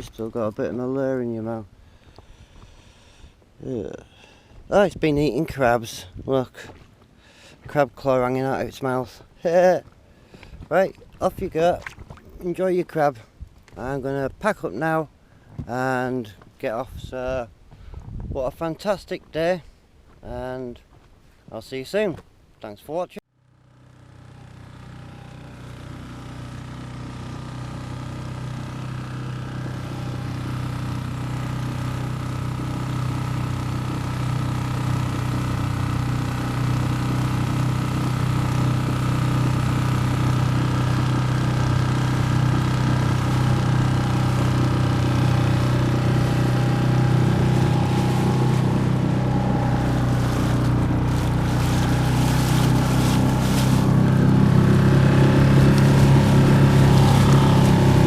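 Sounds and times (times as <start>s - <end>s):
outboard motor running: 6.4s - 13.0s, 23.3s - 58.0s.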